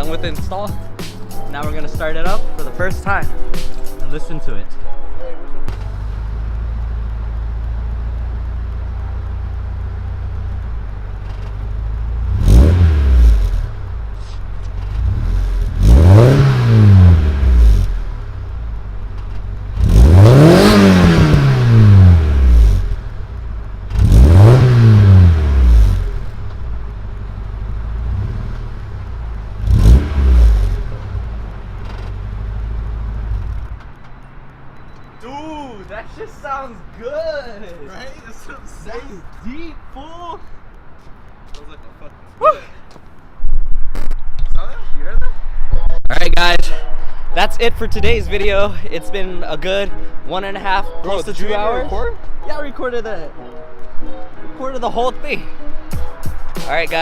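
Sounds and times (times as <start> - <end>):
car engine idling and revving: 5.6 - 35.1, 46.2 - 53.0.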